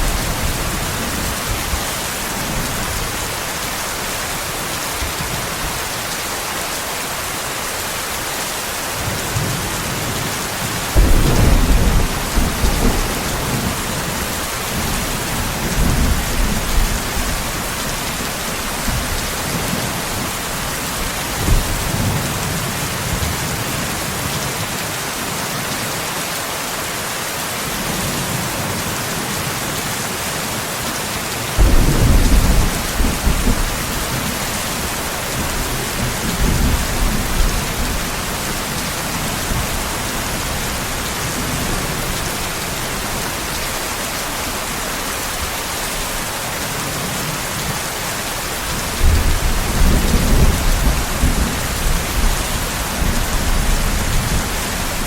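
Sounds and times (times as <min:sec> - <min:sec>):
heavy rain: 0:00.0 - 0:55.0
thunder rumbling: 0:09.0 - 0:22.6, 0:31.6 - 0:43.6, 0:48.7 - 0:55.0.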